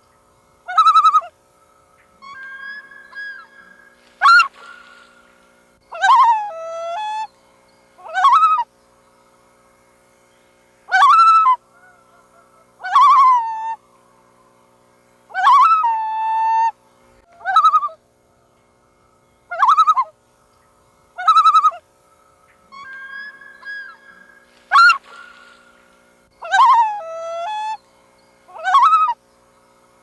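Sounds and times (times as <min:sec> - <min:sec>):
loons calling: 0:00.0 - 0:30.0.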